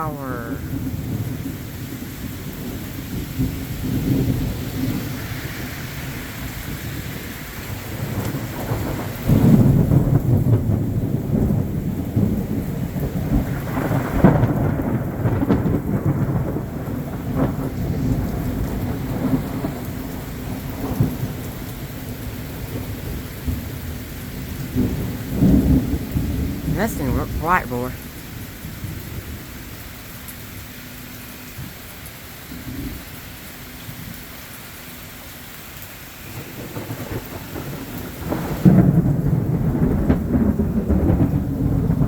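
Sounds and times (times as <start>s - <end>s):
heavy rain pouring: 0.0s - 42.0s
thunder rumbling: 7.8s - 29.4s, 36.2s - 42.0s.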